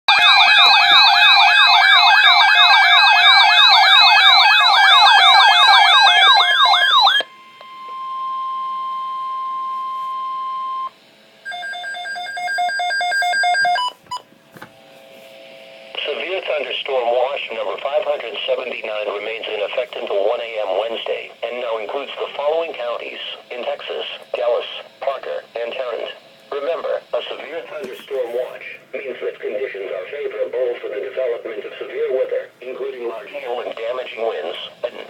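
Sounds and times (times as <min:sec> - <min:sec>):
sweeping siren-like tones: 0:00.1 - 0:10.8
steady alarm tone: 0:00.1 - 0:14.0
faint radio hiss: 0:15.1 - 0:35.0.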